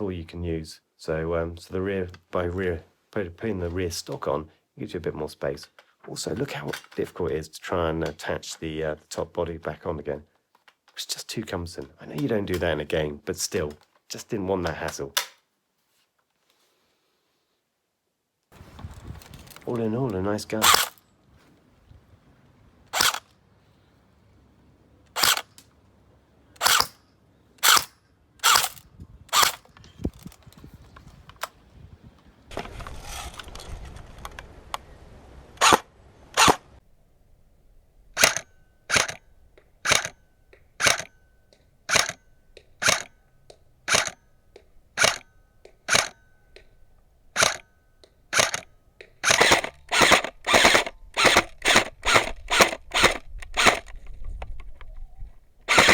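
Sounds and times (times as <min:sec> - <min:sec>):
airsoft gun shots cracking: 0:48.3 - 0:53.9, 0:55.7 - 0:55.9.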